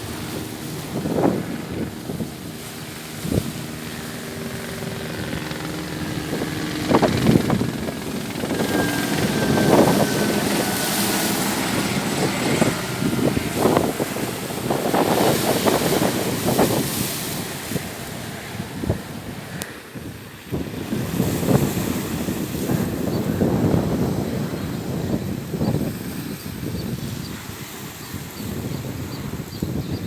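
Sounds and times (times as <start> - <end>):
passing engine drone: 0.0 - 20.0
waves washing on shore: 0.0 - 29.5
wind on microphone: 0.0 - 30.0.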